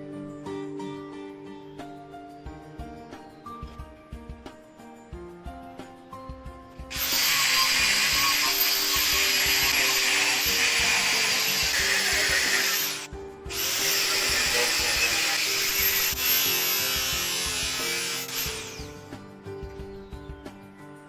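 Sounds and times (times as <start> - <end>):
power tool whining: 6.9 - 19.0.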